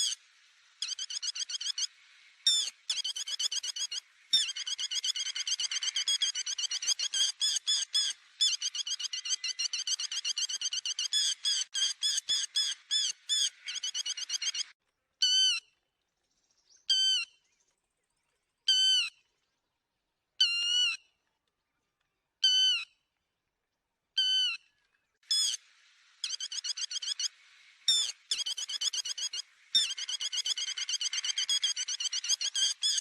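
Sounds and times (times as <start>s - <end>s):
lapwing calls: 0.8s - 15.6s, 25.3s - 25.6s, 26.2s - 27.3s, 27.9s - 33.0s.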